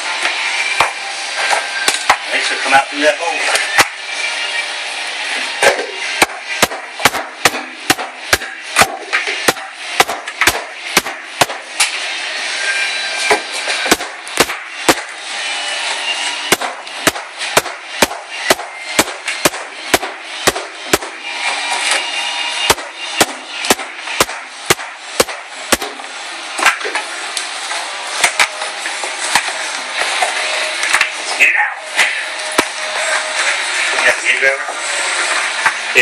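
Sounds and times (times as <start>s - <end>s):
rough steady noise: 5.0s - 36.0s
hammer striking wood: 5.6s - 11.7s, 13.9s - 15.1s, 16.5s - 21.2s, 22.7s - 26.0s.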